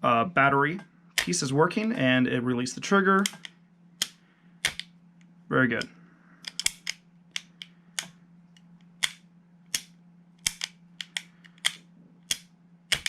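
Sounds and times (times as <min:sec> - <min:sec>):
trigger mechanism clicking: 0:06.4 - 0:08.1.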